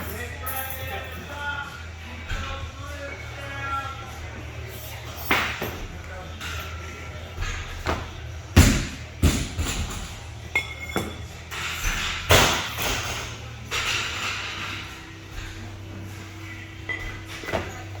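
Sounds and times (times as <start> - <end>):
gym equipment thudding: 7.5 - 10.2.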